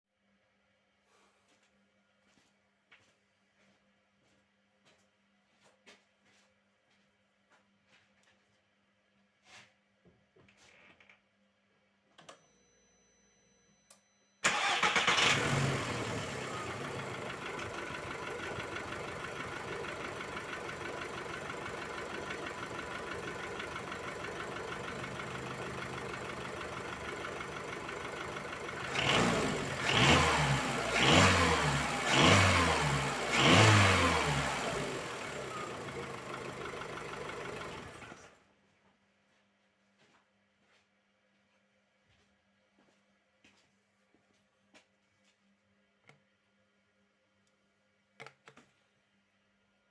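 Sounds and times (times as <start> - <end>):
car engine starting and idling: 14.4 - 38.4
engine revving: 14.5 - 20.3, 28.3 - 38.1.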